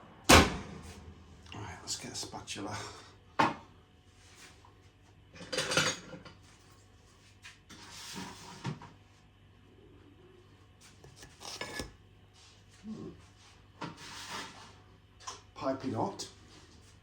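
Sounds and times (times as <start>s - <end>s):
spatula scraping a baking tray: 11.0s - 12.0s.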